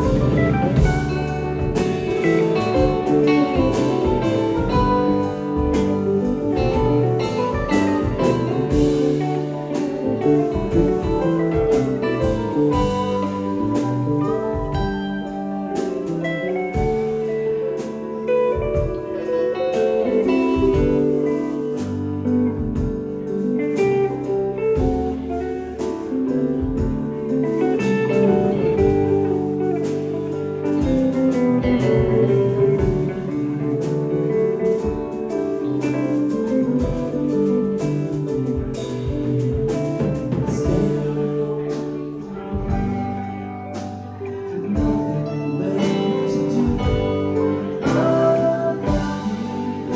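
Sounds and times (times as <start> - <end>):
drum beat: 0.0 - 17.3, 18.6 - 19.2
lead guitar: 0.0 - 49.9
live band playing: 0.0 - 49.9.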